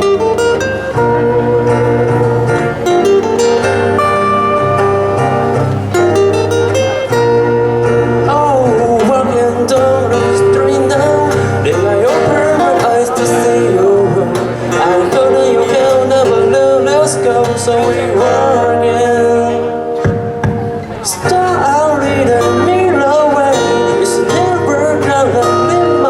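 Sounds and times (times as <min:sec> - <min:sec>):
steady bass: 0:00.0 - 0:20.8
guitar chords: 0:00.0 - 0:26.0
sliding wavering melody: 0:00.2 - 0:09.6.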